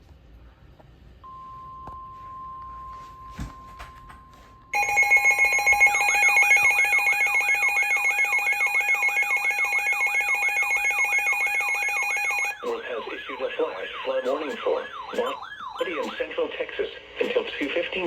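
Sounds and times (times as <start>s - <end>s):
faint steady beep: 1.2s - 12.8s
loud steady alarm tone: 4.7s - 18.0s.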